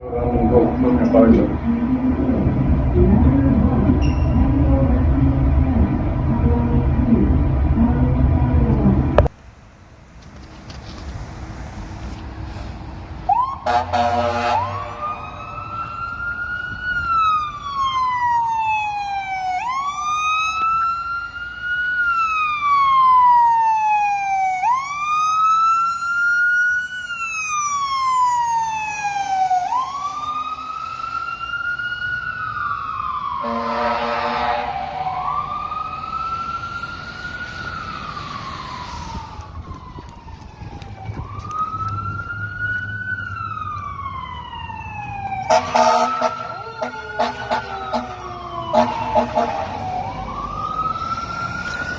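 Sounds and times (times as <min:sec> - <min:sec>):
fire truck siren wailing: 0:00.0 - 0:09.4, 0:11.6 - 0:51.9
air horn blasts: 0:13.6 - 0:15.3, 0:33.4 - 0:35.0, 0:45.5 - 0:48.1, 0:48.8 - 0:49.6.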